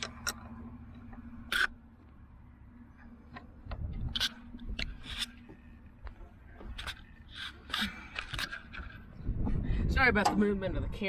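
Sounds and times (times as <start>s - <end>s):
light scraping: 3.9s - 9.1s.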